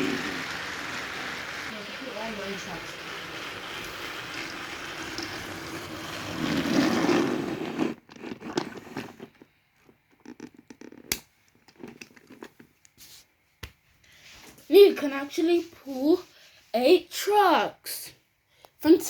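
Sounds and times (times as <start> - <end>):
toy train whirring rattle: 0.0 - 8.0.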